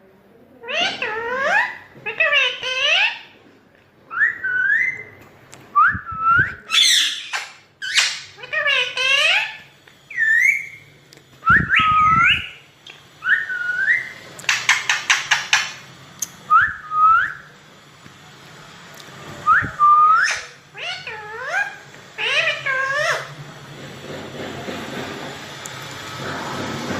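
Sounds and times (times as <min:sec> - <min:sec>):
harsh wavering parrot calls: 0:00.6 - 0:03.4, 0:06.7 - 0:10.9, 0:20.0 - 0:23.4
parrot whistling: 0:04.1 - 0:05.2, 0:05.8 - 0:17.5, 0:19.4 - 0:23.3.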